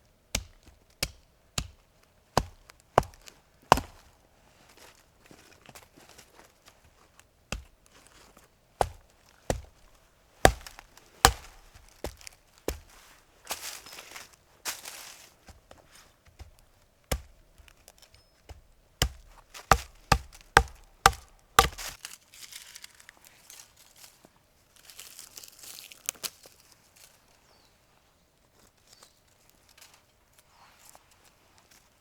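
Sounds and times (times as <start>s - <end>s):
sharp chopping strikes: 0.4s - 1.8s, 2.4s - 4.0s, 8.8s - 12.9s, 16.4s - 17.6s, 18.5s - 22.0s
rustling and scraping: 3.1s - 18.6s.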